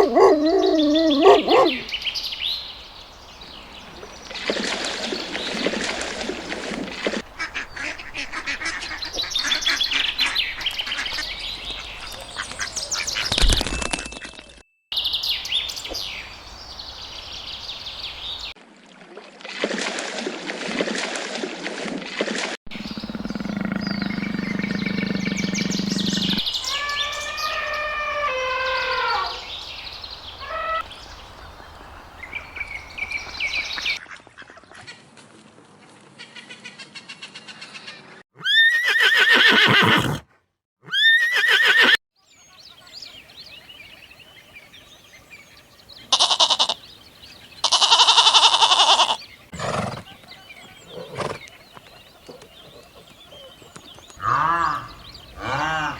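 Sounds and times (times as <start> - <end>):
animal calls: 0.0 - 2.0, 22.7 - 29.5, 30.4 - 30.9, 46.1 - 46.8, 47.6 - 55.9.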